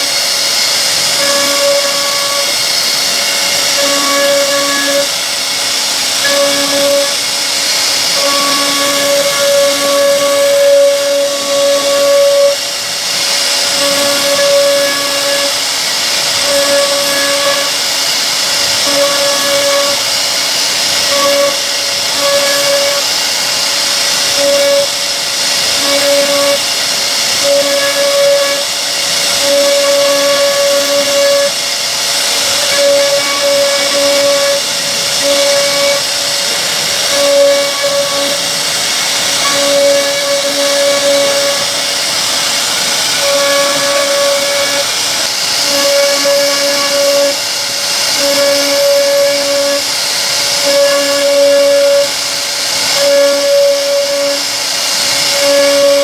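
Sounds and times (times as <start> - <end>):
motor whine: 0.0 - 56.0
router cutter hissing: 0.0 - 56.0.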